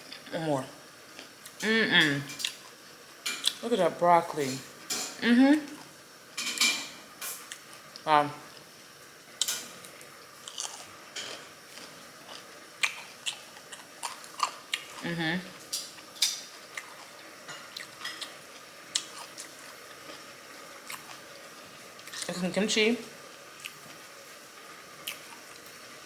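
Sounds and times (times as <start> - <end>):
person humming: 1.6 - 2.3, 5.2 - 5.7, 15.0 - 15.5.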